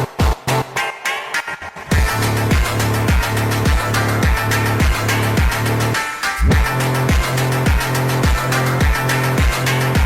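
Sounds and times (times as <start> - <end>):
deep kick drums: 1.9 - 5.7, 6.4 - 10.0
sustained bass: 1.9 - 10.0.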